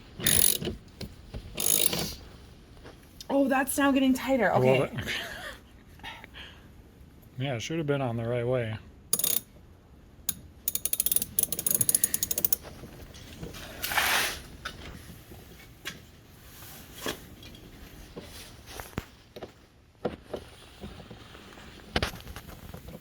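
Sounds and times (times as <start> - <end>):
socket wrench ratchet clicking: 0.2 - 0.7, 1.6 - 2.2, 9.1 - 9.5, 10.3 - 12.7.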